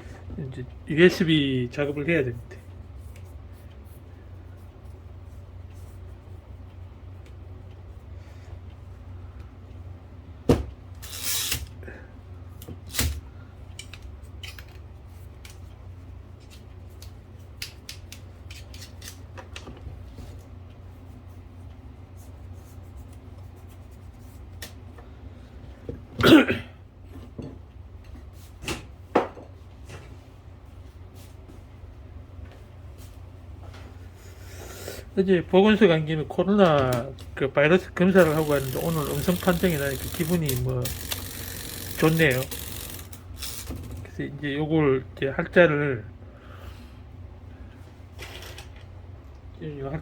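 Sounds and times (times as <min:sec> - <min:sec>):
steady low hum: 0:00.0 - 0:50.0
tools and metal parts clicking: 0:11.0 - 0:11.7, 0:13.8 - 0:14.8, 0:17.8 - 0:19.2, 0:38.2 - 0:44.1.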